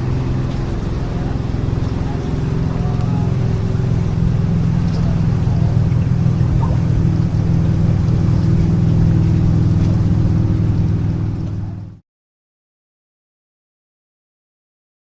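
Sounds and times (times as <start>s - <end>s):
motorboat engine droning: 0.0s - 12.0s.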